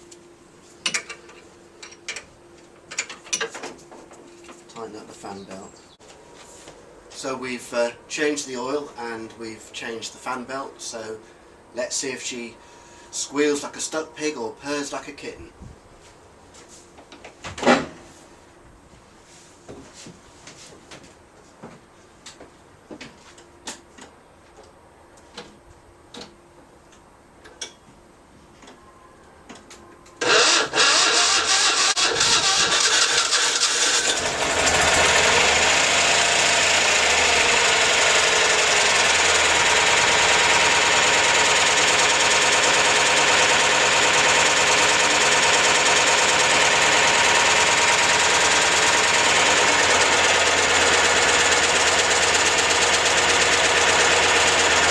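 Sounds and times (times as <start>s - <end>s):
car engine cranking and starting: 30.2s - 54.9s
car engine idling: 31.6s - 54.9s.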